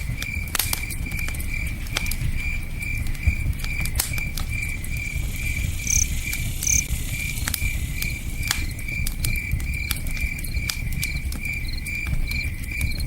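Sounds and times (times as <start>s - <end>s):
campfire crackling and popping: 0.0s - 13.0s
crickets chirping: 0.0s - 13.0s.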